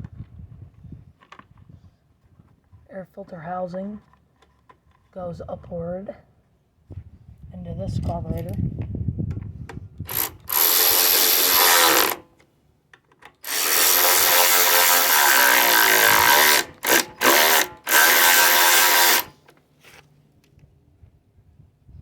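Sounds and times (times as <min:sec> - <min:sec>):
electric drill running: 0:10.1 - 0:12.2, 0:13.4 - 0:19.4.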